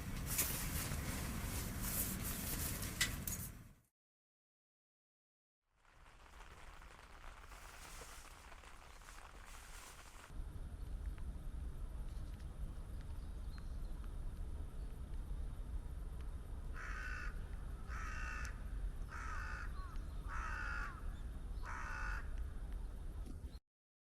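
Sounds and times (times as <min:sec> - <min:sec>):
steady low rumble: 0:06.8 - 0:20.4
crow cawing: 0:16.8 - 0:22.4.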